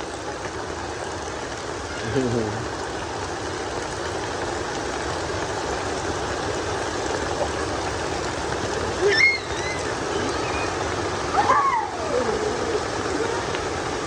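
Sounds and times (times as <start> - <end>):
heavy rain: 0.0 - 14.0
running water: 0.0 - 14.0
high-pitched cry: 9.0 - 13.6.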